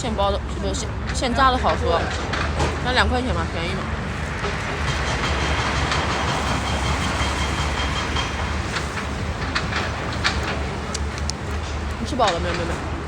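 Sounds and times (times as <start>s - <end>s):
road traffic rumble: 0.0s - 13.0s
light clicks and taps: 9.6s - 12.7s.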